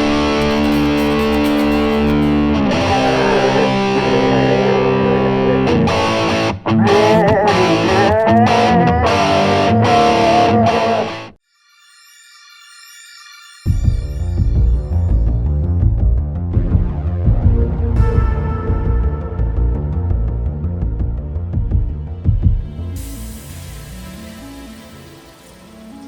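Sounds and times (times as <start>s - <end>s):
distorted electric guitar rock: 0.0s - 7.2s.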